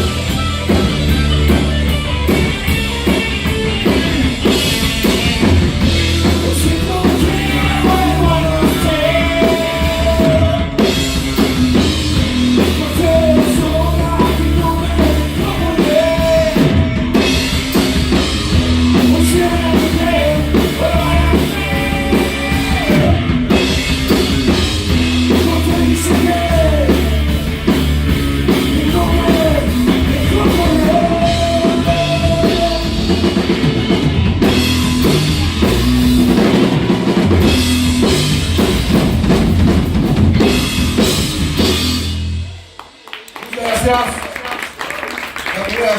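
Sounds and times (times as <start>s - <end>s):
live rock band playing: 0.0s - 45.9s
person singing: 6.3s - 10.9s, 12.5s - 17.2s, 18.9s - 23.3s, 25.3s - 27.4s, 28.5s - 33.5s.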